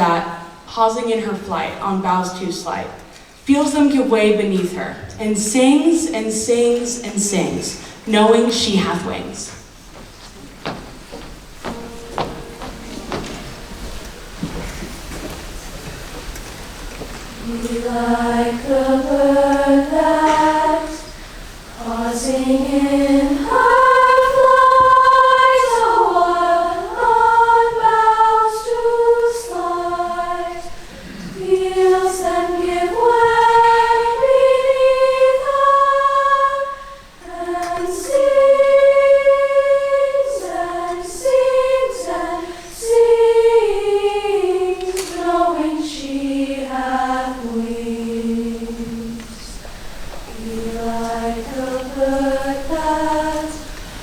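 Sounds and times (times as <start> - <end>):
treble choir singing: 4.8 - 54.0.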